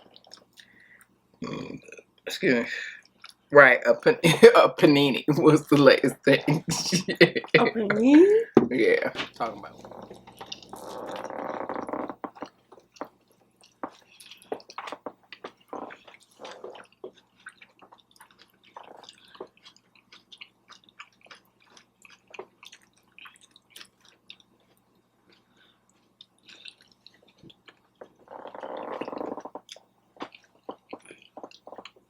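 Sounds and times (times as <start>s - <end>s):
person chewing food: 0.0s - 1.6s, 3.0s - 3.5s, 9.3s - 32.0s
mouth clicks and smacks: 0.0s - 1.9s, 9.2s - 24.5s, 26.2s - 32.0s.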